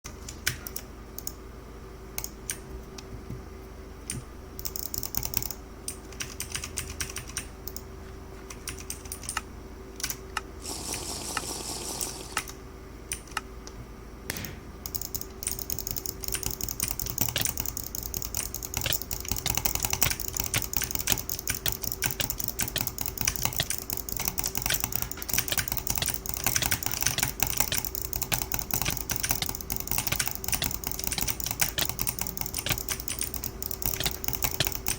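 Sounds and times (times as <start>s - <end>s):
faint steady hum: 0.1s - 34.9s
small sharp typing-like clicks: 0.2s - 1.4s, 4.1s - 7.9s, 8.5s - 11.1s, 14.8s - 34.9s.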